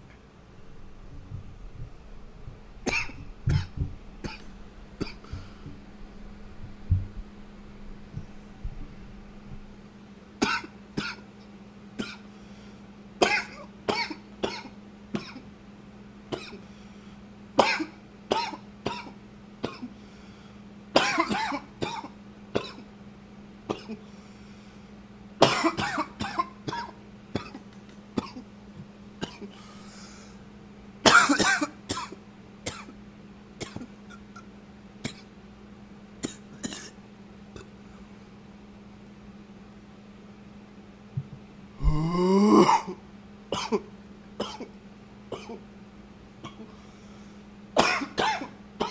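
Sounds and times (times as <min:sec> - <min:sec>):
man coughing: 0:02.9 - 0:05.5, 0:13.2 - 0:15.4, 0:21.0 - 0:22.8, 0:25.4 - 0:27.6, 0:31.1 - 0:32.9, 0:36.2 - 0:37.0, 0:41.8 - 0:44.7, 0:45.4 - 0:45.6, 0:47.8 - 0:48.9.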